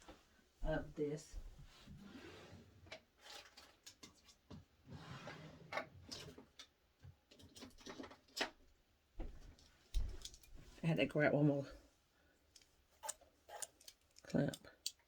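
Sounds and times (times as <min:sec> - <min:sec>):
small clicks and taps: 0:09.6 - 0:10.6.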